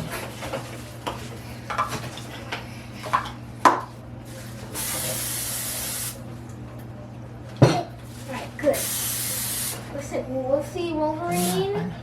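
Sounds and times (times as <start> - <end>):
aerosol cooking spray hiss: 4.7 - 6.2, 8.6 - 9.9, 11.3 - 11.6.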